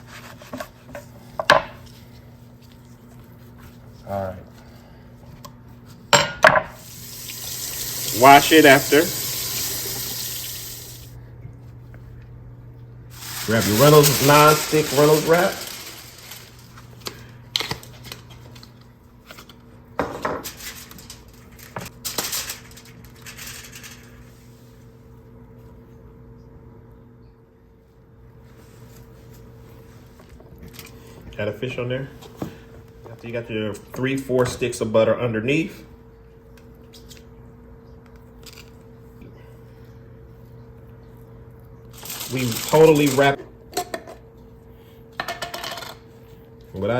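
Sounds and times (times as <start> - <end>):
aluminum foil crinkling and tearing: 13.1 - 18.7, 20.4 - 24.2, 41.9 - 43.4.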